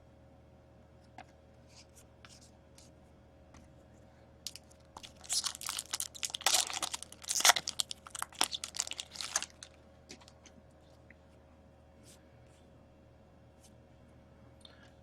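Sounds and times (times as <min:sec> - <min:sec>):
foil wrapper crinkling and tearing: 0:04.5 - 0:10.4.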